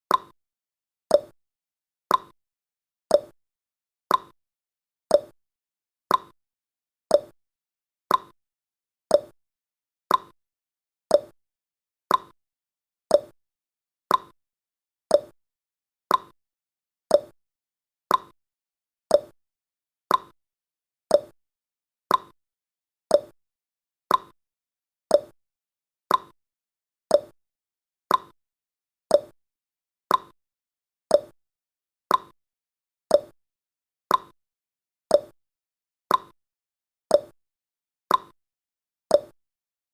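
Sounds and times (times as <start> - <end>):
timer ticking: 0.1 - 0.3, 1.1 - 1.3, 2.1 - 2.3, 3.1 - 3.4, 4.1 - 4.4, 5.1 - 5.3, 6.1 - 6.4, 7.1 - 7.4, 8.1 - 8.4, 9.1 - 9.4, 10.1 - 10.4, 11.1 - 11.4, 12.1 - 12.4, 13.1 - 13.4, 14.1 - 14.4, 15.1 - 15.4, 16.1 - 16.4, 17.1 - 17.4, 18.1 - 18.4, 19.1 - 19.4, 20.1 - 20.4, 21.1 - 21.4, 22.1 - 22.4, 23.1 - 23.4, 24.1 - 24.4, 25.1 - 25.4, 26.1 - 26.4, 27.1 - 27.4, 28.1 - 28.4, 29.1 - 29.4, 30.1 - 30.4, 31.1 - 31.4, 32.1 - 32.4, 33.1 - 33.4, 34.1 - 34.4, 35.1 - 35.4, 36.1 - 36.4, 37.1 - 37.4, 38.1 - 38.4, 39.1 - 39.4.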